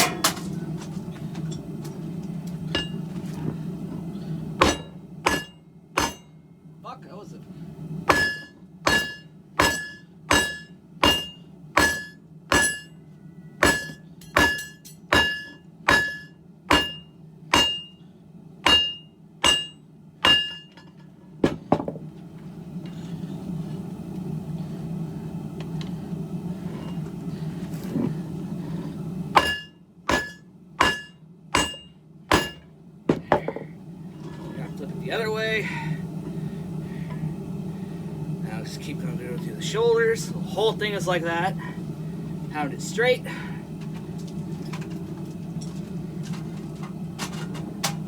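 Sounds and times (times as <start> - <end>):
hammer striking steel on anvil: 2.7 - 3.0, 4.6 - 6.4, 8.1 - 13.0, 13.6 - 18.0, 18.7 - 20.8, 29.3 - 33.3.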